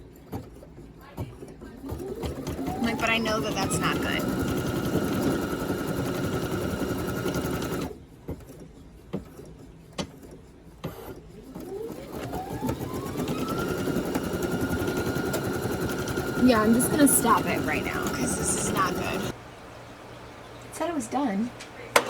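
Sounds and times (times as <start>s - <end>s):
embroidery machine stitching: 0.0s - 8.6s, 10.9s - 19.4s
motor whine: 2.2s - 7.9s, 11.9s - 20.7s.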